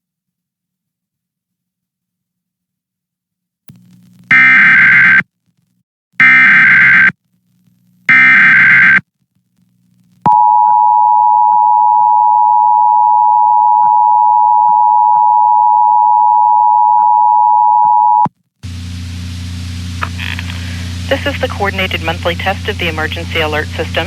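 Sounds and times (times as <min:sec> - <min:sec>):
harsh buzzing data screech: 0:08.1 - 0:09.0
low steady hum: 0:18.6 - 0:24.0.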